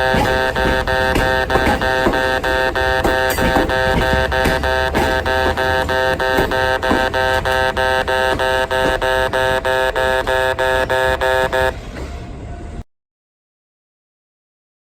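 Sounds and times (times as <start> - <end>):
level crossing electronic bell: 0.0 - 11.7.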